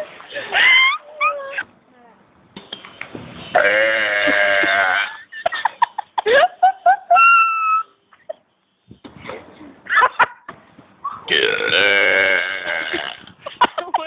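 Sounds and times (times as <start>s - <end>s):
loud belch: 3.6s - 5.2s, 11.3s - 13.3s
people giggling and laughing: 4.6s - 8.5s, 9.2s - 10.5s, 12.9s - 14.0s.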